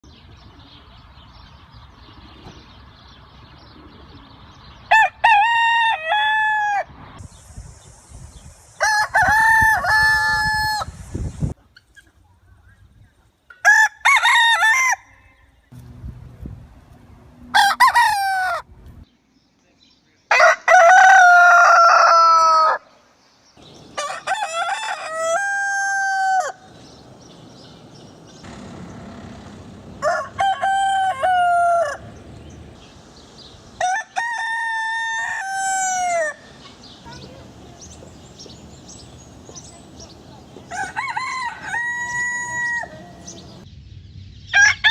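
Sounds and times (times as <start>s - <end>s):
roosters crowing: 4.9s - 7.0s, 8.8s - 11.1s, 13.6s - 15.5s, 17.4s - 18.7s, 20.3s - 23.0s, 23.6s - 43.6s, 44.6s - 44.9s.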